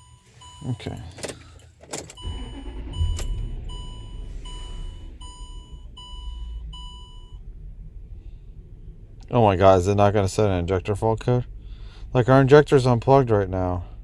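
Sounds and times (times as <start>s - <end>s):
warning chime beeping: 2.2s - 7.4s
engine idling rough: 2.2s - 14.0s.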